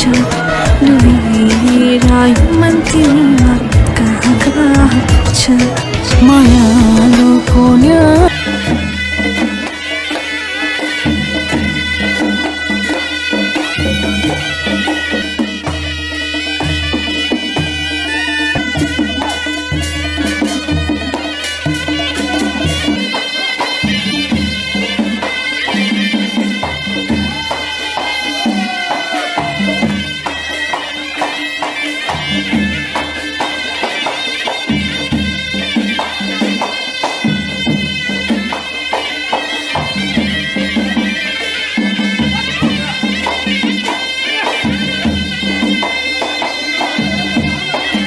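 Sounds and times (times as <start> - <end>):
reedy wind instrument melody: 0.0 - 48.0
rhythmic drum beat: 0.0 - 48.0.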